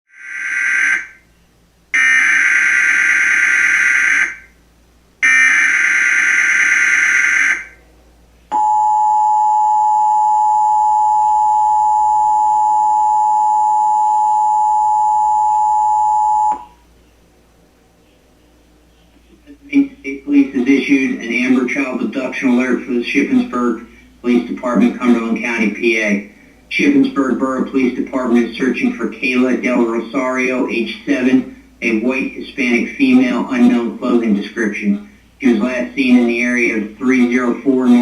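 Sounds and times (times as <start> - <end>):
two-tone attention signal: 8.5 - 16.7.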